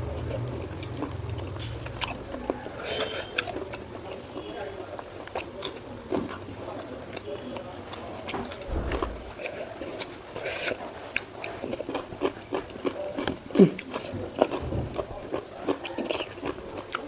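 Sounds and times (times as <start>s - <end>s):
chewing mouth clicks and smacks: 7.9s - 17.0s.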